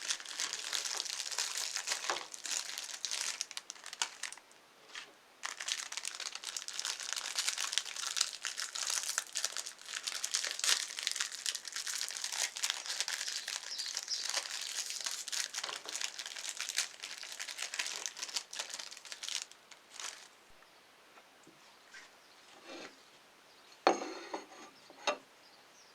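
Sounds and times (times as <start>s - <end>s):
cookies crunching in a grinder: 0.0s - 20.3s.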